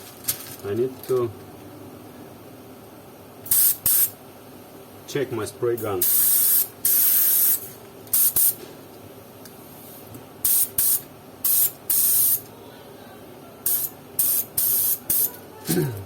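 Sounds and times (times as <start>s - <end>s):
spray gun air blasts: 3.5s - 4.1s, 6.0s - 8.6s, 10.4s - 12.4s, 13.7s - 15.3s.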